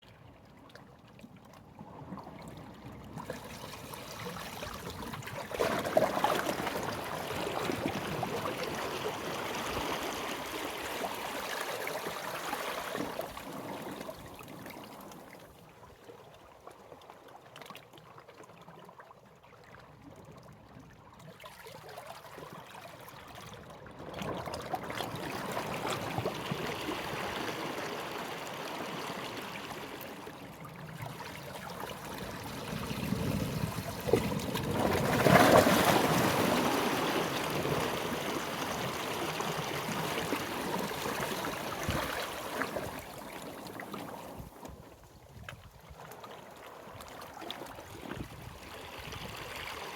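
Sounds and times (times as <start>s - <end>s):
sea waves washing on shore: 31.1s - 44.7s.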